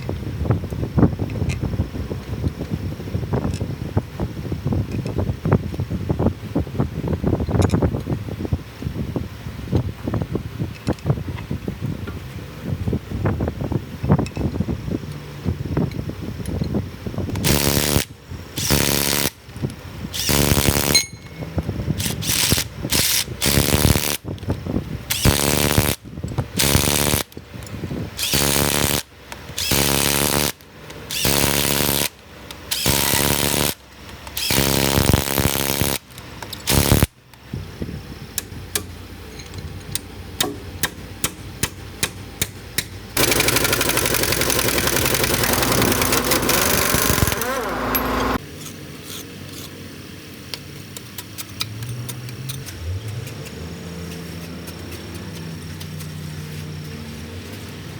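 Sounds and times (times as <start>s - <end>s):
power tool buzzing bursts: 17.4s - 19.4s, 20.2s - 21.1s, 22.2s - 24.2s, 28.2s - 33.8s, 34.4s - 36.0s, 36.6s - 37.1s, 43.2s - 48.4s
sharp clicks: 39.8s - 48.4s.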